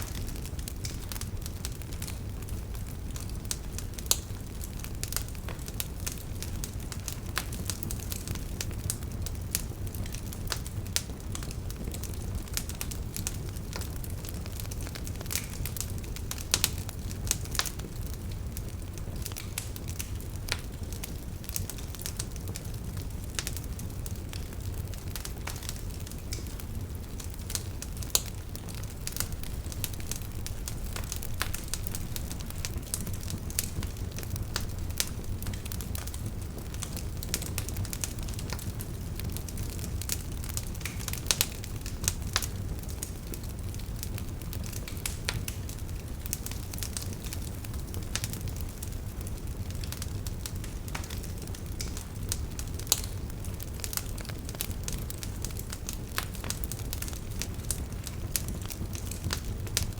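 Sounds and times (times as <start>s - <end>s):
campfire flame rumble: 0.0s - 59.9s
fire crackles and pops: 0.0s - 59.9s.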